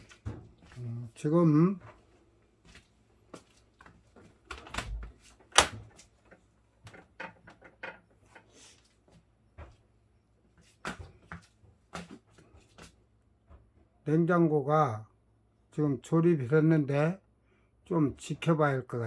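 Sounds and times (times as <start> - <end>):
refrigerator parts clicking and knocking: 4.5 - 8.4.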